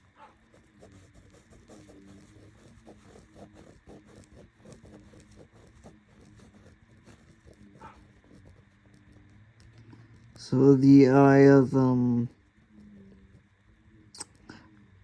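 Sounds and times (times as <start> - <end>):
pen scratching on paper: 0.0 - 10.4
low steady hum: 0.0 - 15.0.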